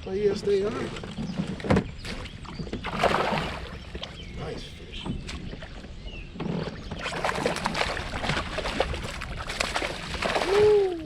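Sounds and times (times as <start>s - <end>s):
fish thrashing in water: 1.0s - 4.2s, 6.6s - 11.0s.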